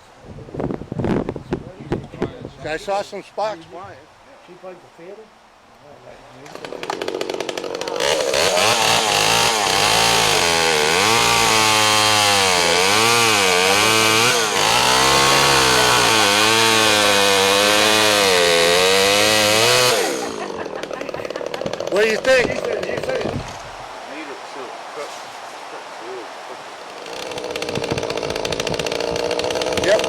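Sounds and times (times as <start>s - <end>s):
chainsaw cutting wood: 6.4s - 23.8s, 26.8s - 30.0s.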